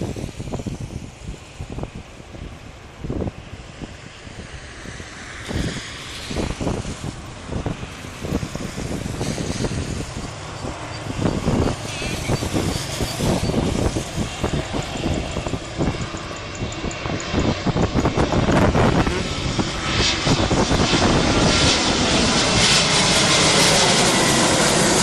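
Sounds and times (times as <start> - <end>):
jet airliner engine noise: 0.0 - 25.0
wind buffeting microphone: 0.0 - 25.0.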